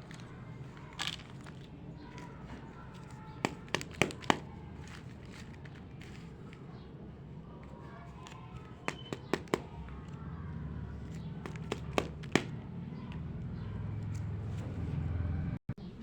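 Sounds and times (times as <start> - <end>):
plastic toy pieces clicking: 0.0 - 6.6.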